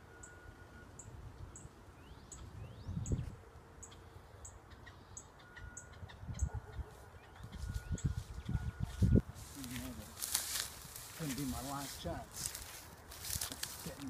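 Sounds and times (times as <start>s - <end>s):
bird chirping: 0.0s - 10.2s.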